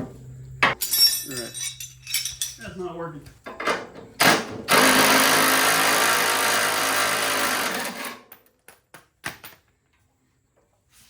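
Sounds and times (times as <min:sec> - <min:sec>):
power tool running: 0:04.7 - 0:08.2.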